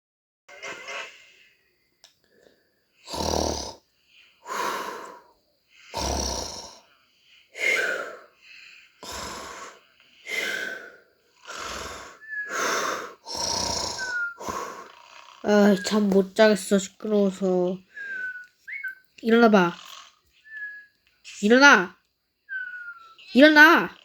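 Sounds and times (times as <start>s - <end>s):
cartoon pig snoring: 3.0s - 3.8s, 5.8s - 6.9s, 9.0s - 16.2s, 19.4s - 20.2s, 23.2s - 24.0s.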